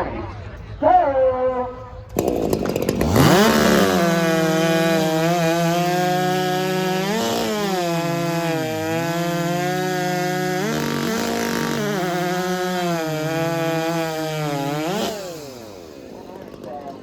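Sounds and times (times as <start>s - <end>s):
chainsaw revving at full throttle: 2.1s - 17.0s.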